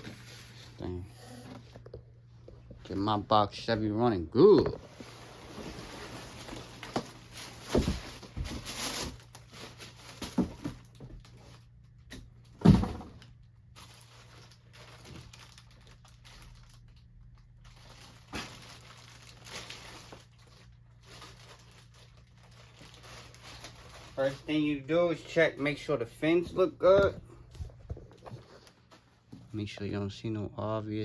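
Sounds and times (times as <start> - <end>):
packaging crinkling and rustling: 4.6 - 12.6, 13.2 - 29.1.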